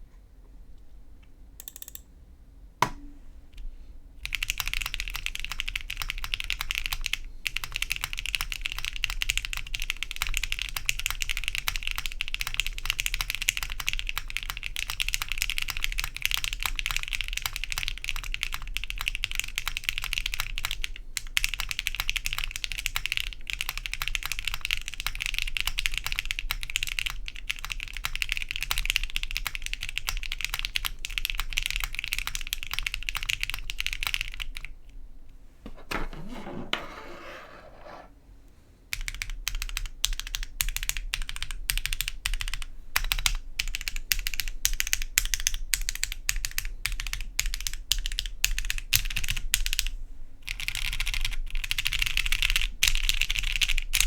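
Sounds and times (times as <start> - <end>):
mechanical keyboard typing: 1.6 - 2.0, 4.2 - 34.7, 38.9 - 49.9, 50.5 - 54.0.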